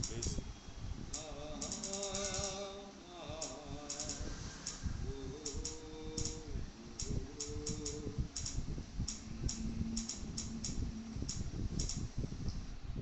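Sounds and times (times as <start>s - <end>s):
sharp ticking clicks: 0.0s - 12.6s
held low notes: 0.0s - 13.0s.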